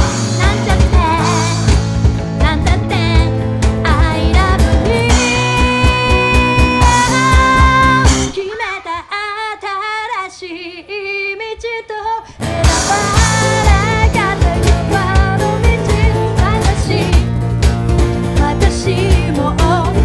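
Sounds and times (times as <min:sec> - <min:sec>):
pop-rock band playing: 0:00.0 - 0:08.4, 0:12.4 - 0:20.0
woman singing: 0:00.0 - 0:20.0.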